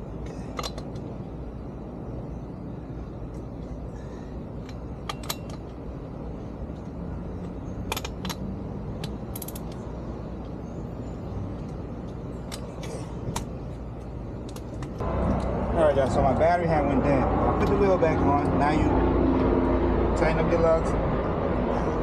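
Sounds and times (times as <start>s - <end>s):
steady low rumble: 0.0s - 22.0s
metallic clicks of hand tools: 0.2s - 1.1s, 4.6s - 5.8s, 6.8s - 9.8s.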